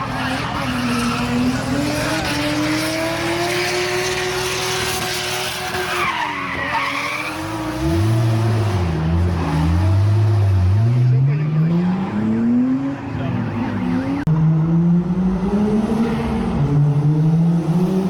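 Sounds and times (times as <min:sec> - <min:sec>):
car engine at high revs: 0:00.0 - 0:18.0
tyres skidding: 0:00.0 - 0:18.0.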